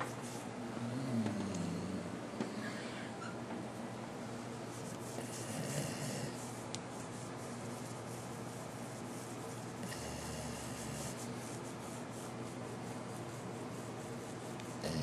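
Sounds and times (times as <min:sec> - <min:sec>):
dog snoring: 0:00.8 - 0:02.8, 0:05.2 - 0:06.4, 0:09.8 - 0:11.2, 0:14.8 - 0:15.0.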